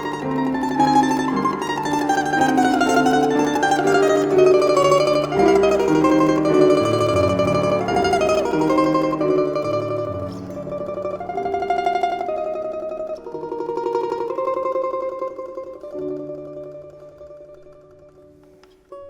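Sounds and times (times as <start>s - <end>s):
domra tremolo melody: 0.0s - 13.0s
grand piano accompaniment: 0.0s - 18.7s.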